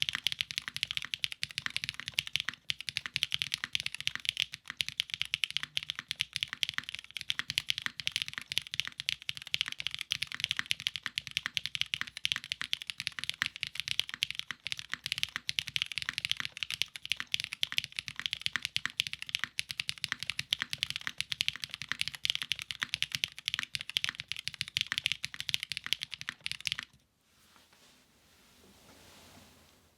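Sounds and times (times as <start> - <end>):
typing on mechanical keyboard: 0.0 - 27.0.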